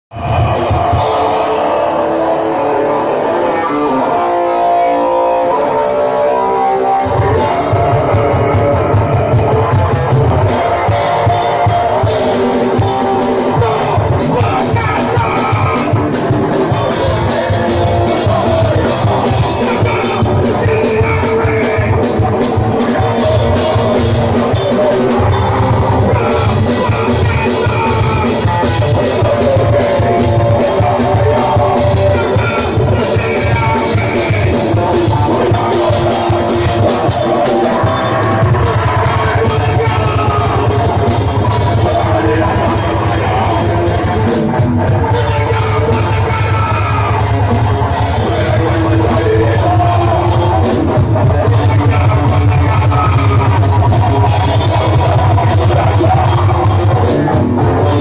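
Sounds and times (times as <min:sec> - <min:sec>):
rock music: 0:00.0 - 0:58.0
drum kit playing along: 0:00.1 - 0:58.0.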